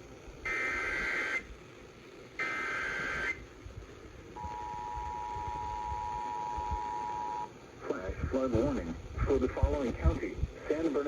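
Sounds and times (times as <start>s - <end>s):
two-tone attention signal: 4.4s - 7.5s.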